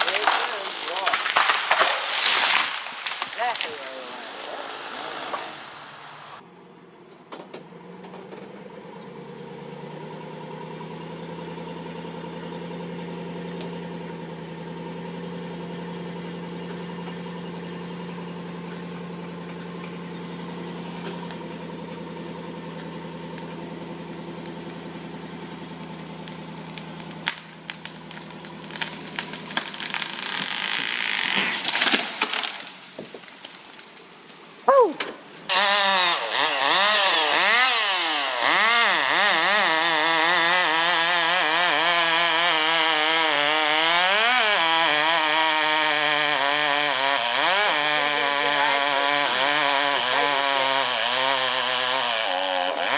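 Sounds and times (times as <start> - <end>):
tree thudding on ground: 0.0 - 5.6, 23.3 - 35.5
tree falling with cracking branches: 0.0 - 6.4, 23.2 - 52.9
engine idling: 5.1 - 52.9.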